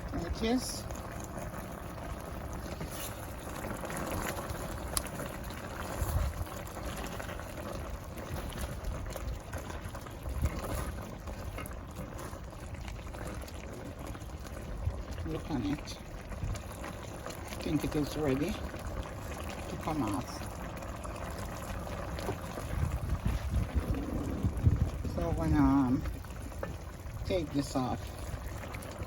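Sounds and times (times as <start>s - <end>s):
pot of food bubbling: 0.0s - 29.0s
soft low bumps: 22.2s - 27.3s.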